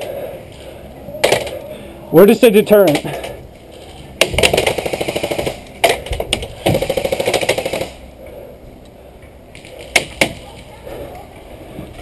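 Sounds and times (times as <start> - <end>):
airsoft rifle firing full auto: 4.2 - 8.0.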